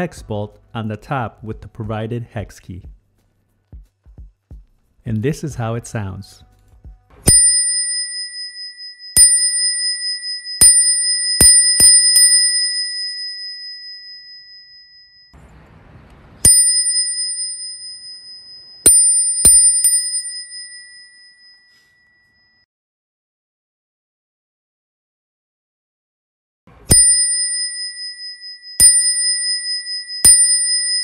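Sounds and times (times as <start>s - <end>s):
bicycle bell dings: 7.2s - 15.4s, 16.4s - 22.6s, 26.9s - 31.0s.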